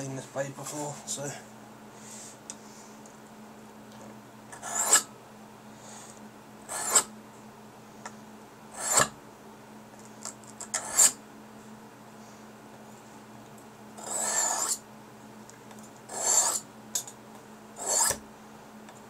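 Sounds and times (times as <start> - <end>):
knife sharpening on whetstone: 4.6 - 5.1, 6.7 - 7.1, 8.8 - 9.1, 10.7 - 11.2, 14.0 - 14.8, 16.1 - 16.6, 17.8 - 18.2.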